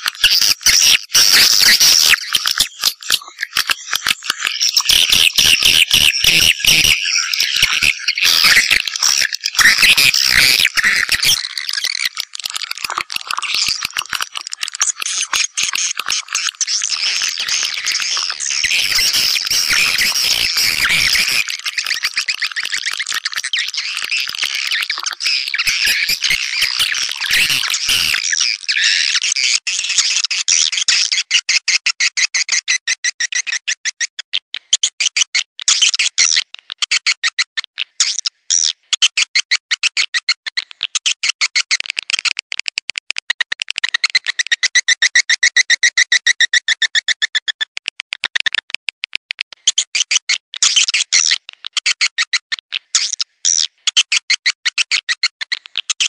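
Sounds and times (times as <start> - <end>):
swiftlets twittering: 14.8 - 28.3.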